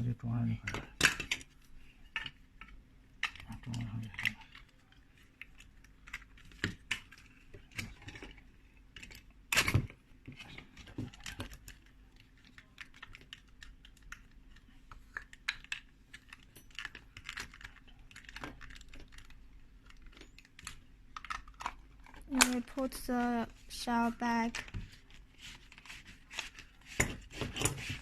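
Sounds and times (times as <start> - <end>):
small plastic parts clicking: 10.8 - 22.8.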